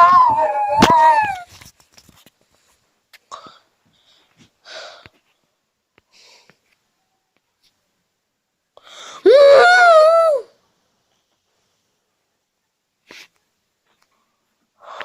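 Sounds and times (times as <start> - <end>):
person squealing: 0.0 - 1.5.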